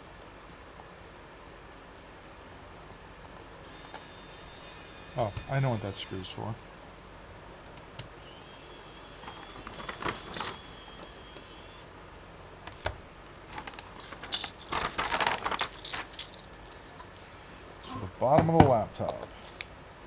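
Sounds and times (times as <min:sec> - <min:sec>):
faint high whine: 0:03.5 - 0:06.7, 0:08.2 - 0:12.3
small clicks and rattles of parts: 0:13.5 - 0:17.2.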